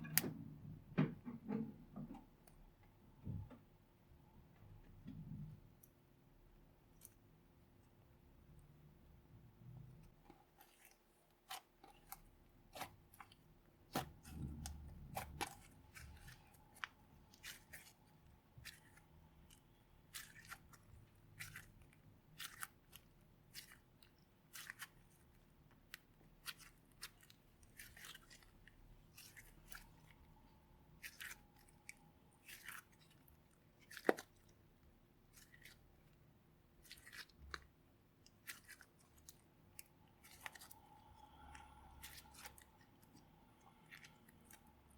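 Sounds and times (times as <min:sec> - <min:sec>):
slime kneaded by hand: 0:09.8 - 0:44.9.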